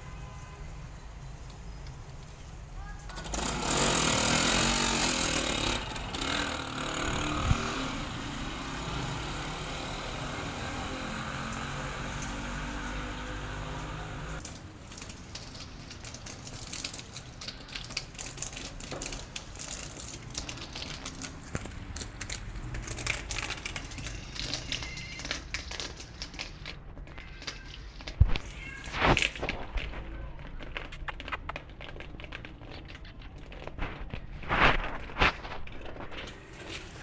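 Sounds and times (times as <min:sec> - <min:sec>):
motorcycle engine running: 0:03.3 - 0:14.4.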